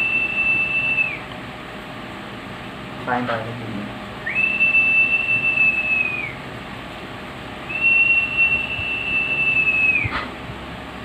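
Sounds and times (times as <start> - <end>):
long whistled notes: 0.0 - 1.3, 4.2 - 6.4, 7.6 - 10.2.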